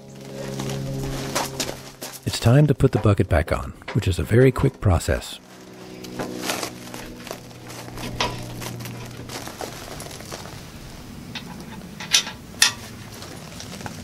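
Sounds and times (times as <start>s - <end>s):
low steady hum: 0.0s - 14.0s
metal clinks and knocks: 11.4s - 13.0s.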